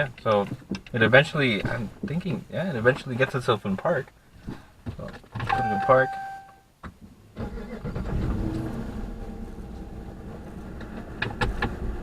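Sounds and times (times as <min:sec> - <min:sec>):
car engine starting and rumbling: 0:07.0 - 0:12.0.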